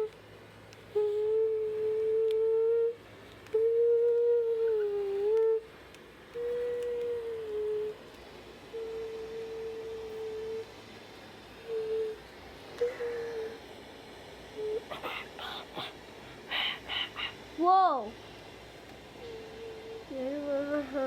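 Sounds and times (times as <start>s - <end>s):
person humming: 0.9s - 5.7s, 6.4s - 8.1s, 8.7s - 10.8s, 11.6s - 13.7s, 14.5s - 17.4s, 19.2s - 21.0s.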